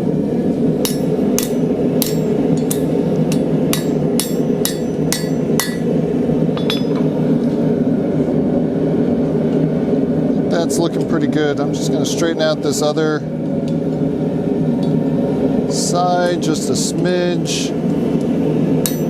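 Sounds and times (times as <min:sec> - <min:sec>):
hammer striking steel: 0:00.8 - 0:06.0, 0:06.6 - 0:07.1.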